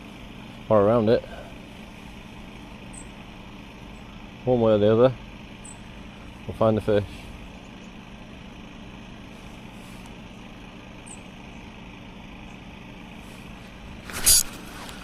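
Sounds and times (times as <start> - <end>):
low engine hum: 0.0 - 15.0
brief sharp noisy sound: 14.1 - 14.7.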